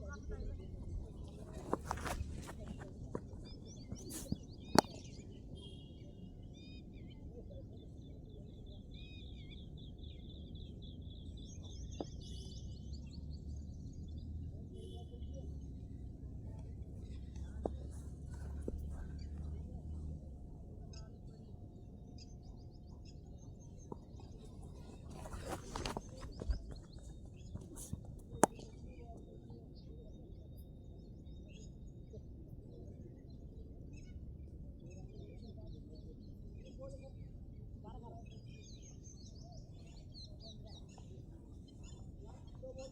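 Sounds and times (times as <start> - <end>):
small birds chirping: 0.0 - 42.9.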